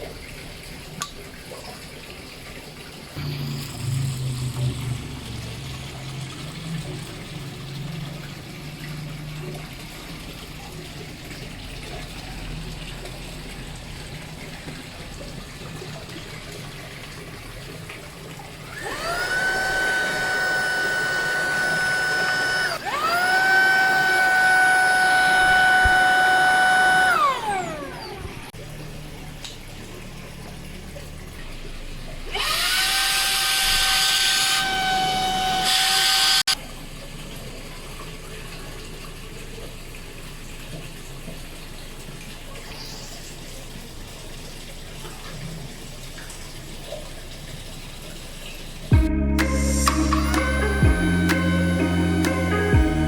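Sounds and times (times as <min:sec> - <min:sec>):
cordless vacuum motor whine: 0:18.7 - 0:28.5, 0:32.3 - 0:36.6.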